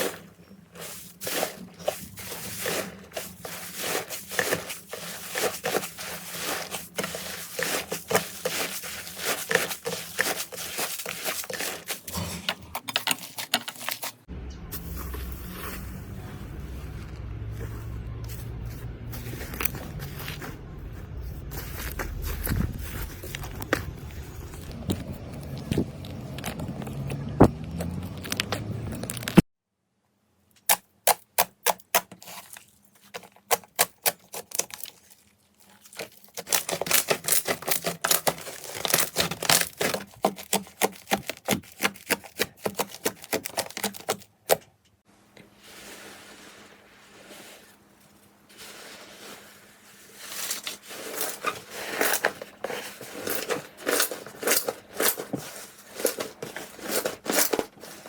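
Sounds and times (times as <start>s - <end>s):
slime squishing: 0.0s - 14.3s, 31.1s - 44.6s
low rumble: 14.3s - 29.4s.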